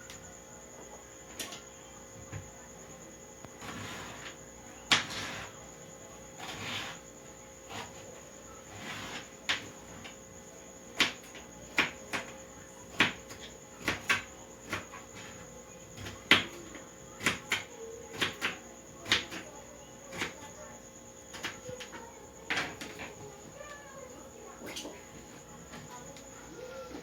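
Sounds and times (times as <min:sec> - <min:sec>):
knife chopping on cutting board: 0:11.0 - 0:12.3, 0:12.9 - 0:15.4, 0:17.2 - 0:19.4.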